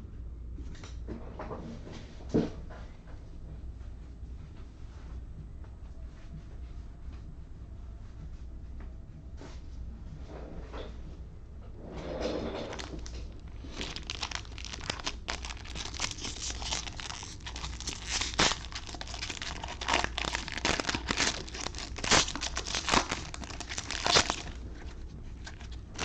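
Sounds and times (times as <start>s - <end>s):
plastic wrappers tearing and crinkling: 12.7s - 26.0s.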